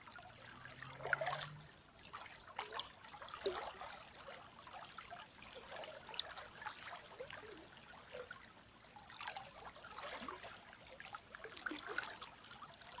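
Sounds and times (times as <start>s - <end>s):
river babbling over stones: 0.0s - 3.0s.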